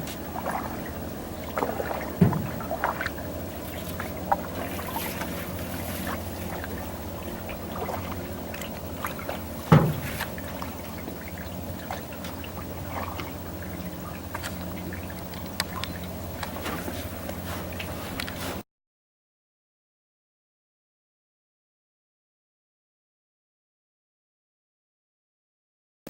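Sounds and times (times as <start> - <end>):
water dripping off paddle: 0.0 - 18.4
faint low hum: 0.0 - 18.6
small water splashes: 0.0 - 18.6.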